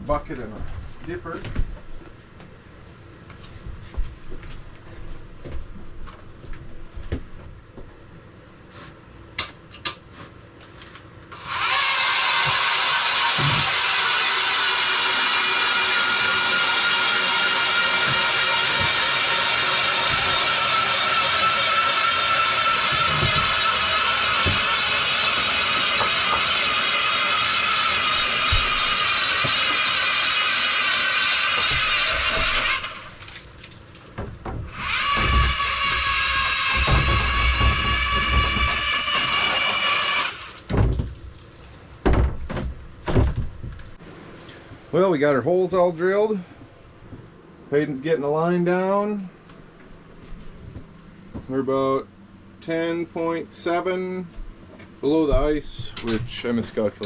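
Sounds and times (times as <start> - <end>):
power ice auger running: 11.3 - 33.4, 34.7 - 40.7.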